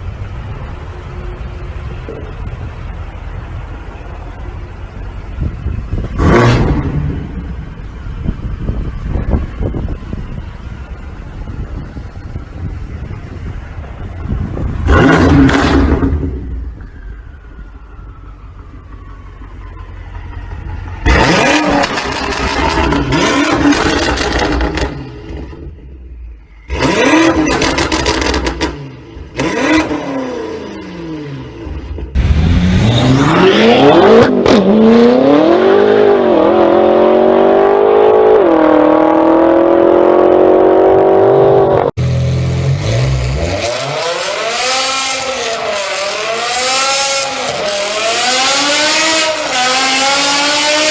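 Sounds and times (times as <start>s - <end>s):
car engine revving: 5.9s - 7.8s, 14.5s - 16.6s, 20.1s - 25.8s, 26.6s - 50.9s.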